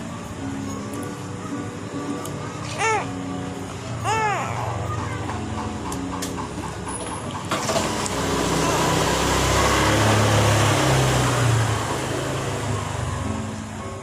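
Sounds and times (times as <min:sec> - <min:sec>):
passing vehicle rumbling: 0:06.4 - 0:13.6.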